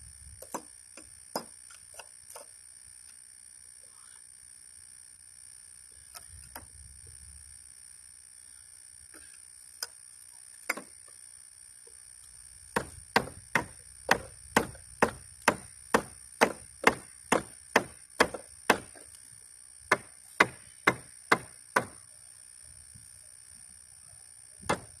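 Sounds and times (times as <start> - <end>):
hammer knocking on wooden boards: 12.8 - 19.0, 19.9 - 22.0, 24.6 - 24.9.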